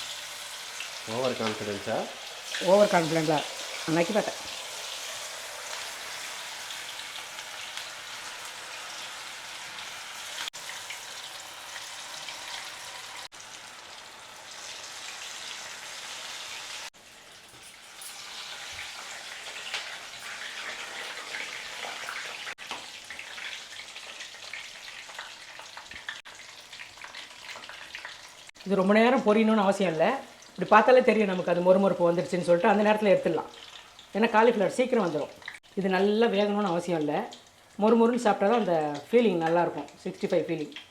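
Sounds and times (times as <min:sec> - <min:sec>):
food deep-frying in hot oil: 0:00.0 - 0:40.9.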